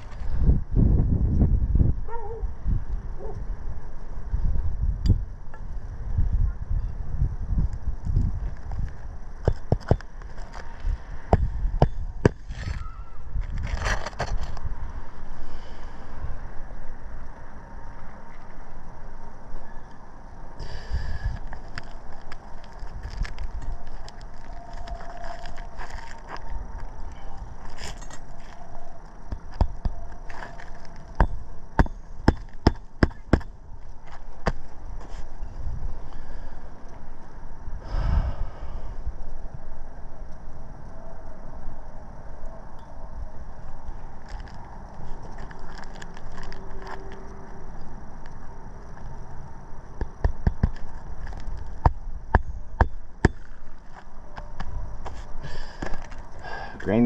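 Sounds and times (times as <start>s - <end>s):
wind on microphone: 0.0s - 16.9s, 37.8s - 39.7s.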